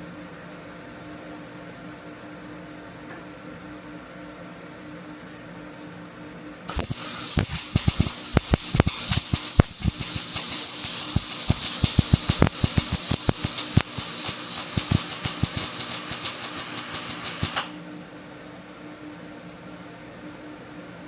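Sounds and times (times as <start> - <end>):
welding arc crackling: 6.7 - 17.8
steady hum: 6.7 - 18.2.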